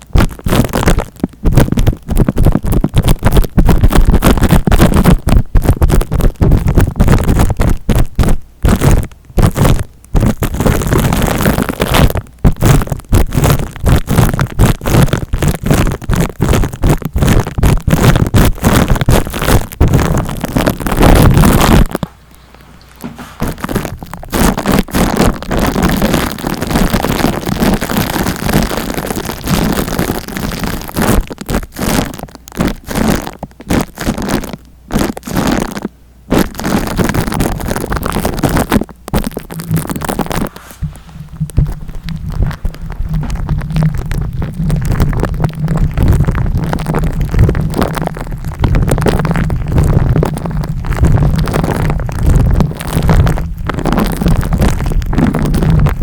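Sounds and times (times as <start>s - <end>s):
scratching on microphone: 0.0s - 56.0s
deep rumble: 39.2s - 56.0s.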